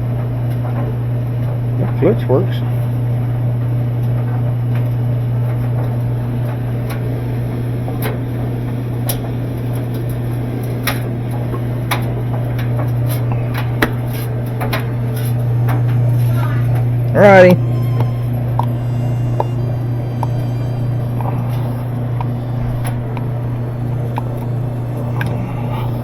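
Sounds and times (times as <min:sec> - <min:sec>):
washing machine motor hum: 0:00.0 - 0:26.0.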